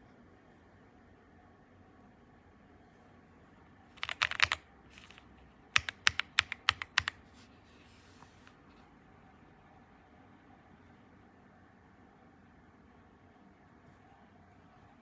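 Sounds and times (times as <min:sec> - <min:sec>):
mechanical keyboard key presses: 0:04.0 - 0:05.2, 0:05.8 - 0:07.2.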